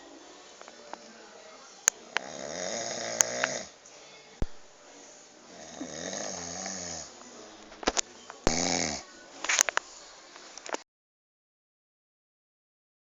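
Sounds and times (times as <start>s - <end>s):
person snoring: 2.1s - 3.8s, 5.5s - 7.2s, 8.5s - 9.1s.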